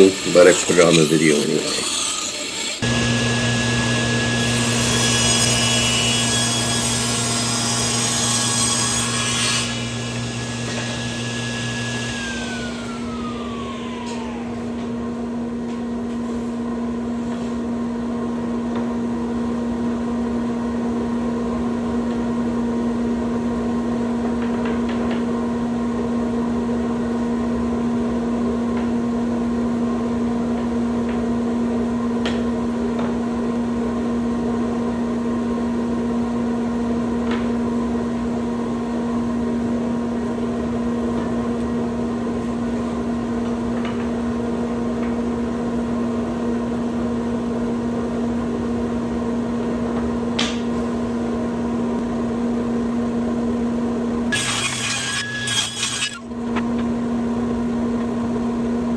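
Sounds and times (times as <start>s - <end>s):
saw motor winding down: 0.0s - 15.3s, 54.3s - 56.4s
power saw cutting wood: 0.0s - 15.8s, 54.3s - 56.4s
steady machine hum: 2.8s - 21.8s.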